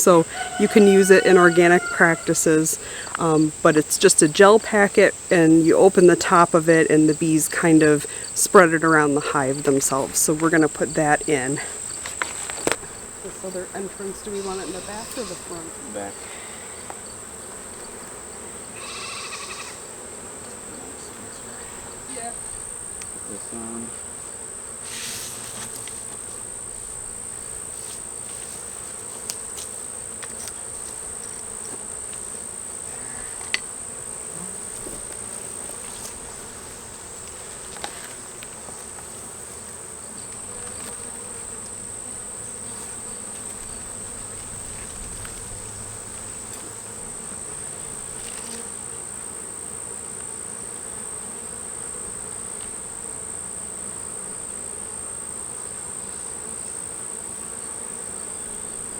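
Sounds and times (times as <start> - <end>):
high-pitched insect trill: 0.0 - 17.2, 18.7 - 20.0, 20.9 - 24.0
honeybees buzzing: 0.0 - 58.9.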